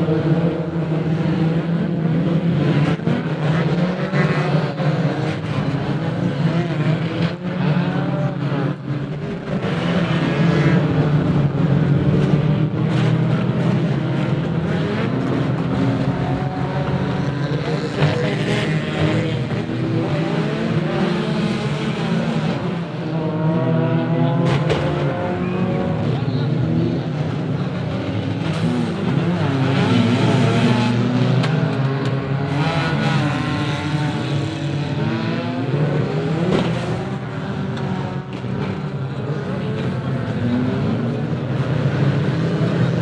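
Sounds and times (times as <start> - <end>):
racing car engines revving: 0.0 - 43.0
cars knocking together: 24.4 - 25.2, 36.0 - 40.4.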